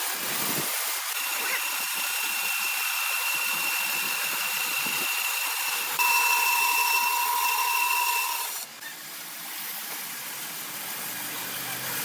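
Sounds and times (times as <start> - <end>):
sawmill saw cutting timber: 0.0 - 8.7.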